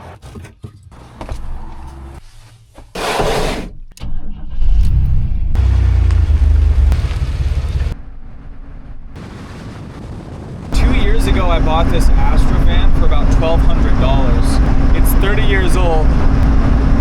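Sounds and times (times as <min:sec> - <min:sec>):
van engine running: 0:04.0 - 0:09.2, 0:10.8 - 0:17.0.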